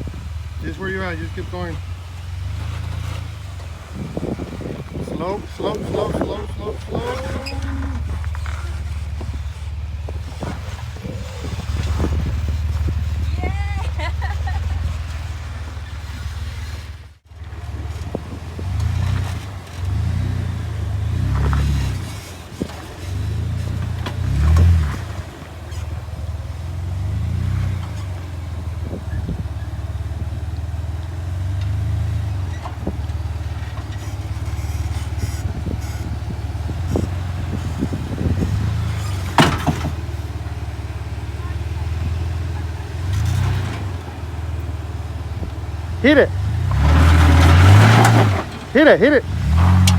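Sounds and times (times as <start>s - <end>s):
off-road vehicle engine revving: 0.0s - 49.9s.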